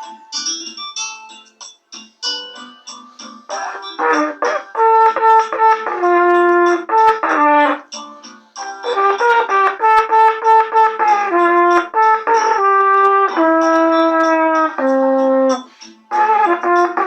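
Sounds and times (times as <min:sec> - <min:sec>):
trumpet slow melody: 0:03.5 - 0:08.0, 0:08.8 - 0:17.0.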